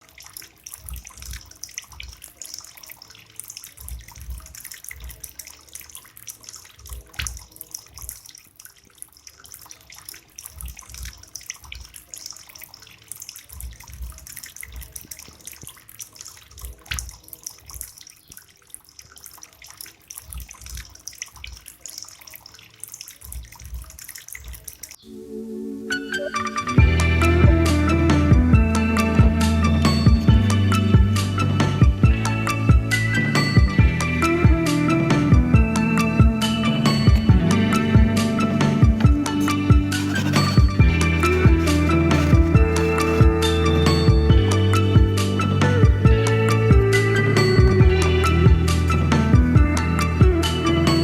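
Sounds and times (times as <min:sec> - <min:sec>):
fountain water trickling and splashing: 0:00.0 - 0:25.0, 0:26.8 - 0:51.0
dull low thumps: 0:26.8 - 0:47.0.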